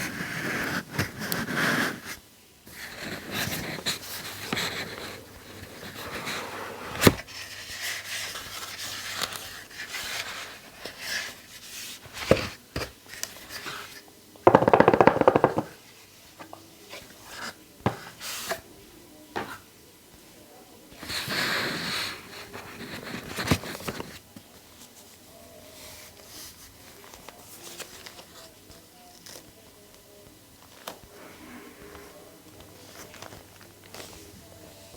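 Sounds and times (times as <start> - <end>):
clicks and taps: 14.5 - 15.8.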